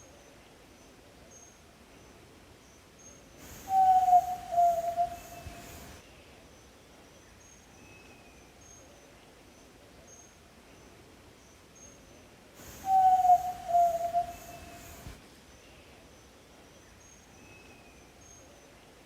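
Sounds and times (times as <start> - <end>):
faint high chirps: 3.4 - 6.0, 12.6 - 15.8
bird low whistled call: 3.5 - 5.9, 12.6 - 15.1.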